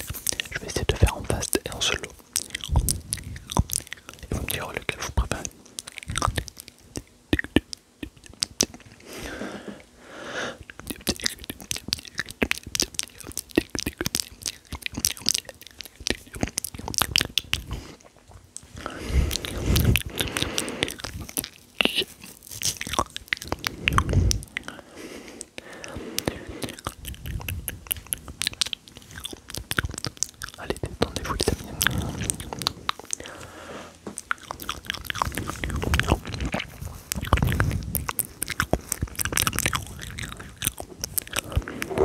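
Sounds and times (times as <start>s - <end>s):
wet mouth clicks and smacks: 0.0s - 9.0s, 10.6s - 24.8s, 25.4s - 33.3s, 34.0s - 42.0s.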